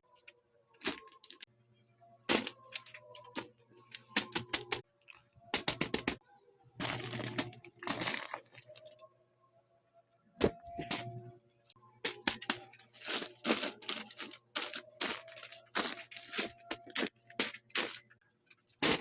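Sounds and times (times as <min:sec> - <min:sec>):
plastic crinkling rustles: 0:06.8 - 0:08.9, 0:12.4 - 0:18.0.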